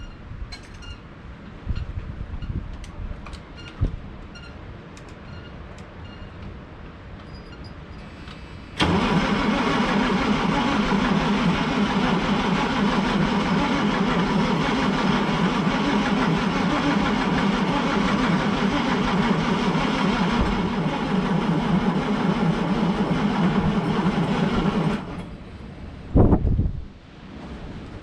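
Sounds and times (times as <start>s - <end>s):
starter cranking diesel engine: 8.0s - 25.4s.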